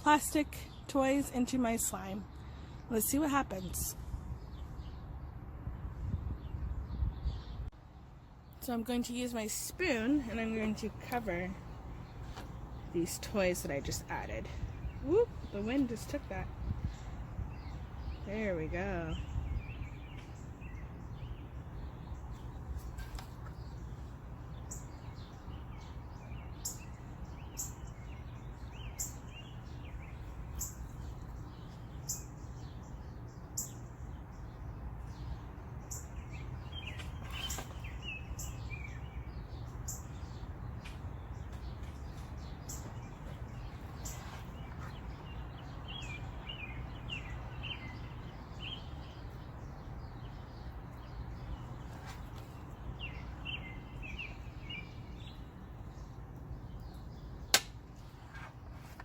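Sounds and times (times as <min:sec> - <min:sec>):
birds chirping: 0:00.0 - 0:59.0
wind rumble on microphone: 0:03.8 - 0:07.8, 0:13.7 - 0:23.0
twittering bird calls: 0:08.4 - 0:59.0.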